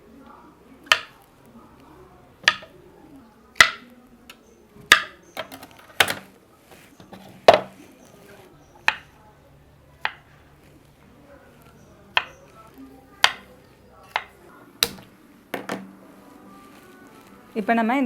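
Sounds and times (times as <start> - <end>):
knife chopping on cutting board: 13.2 - 13.5
light knife taps: 13.2 - 15.9.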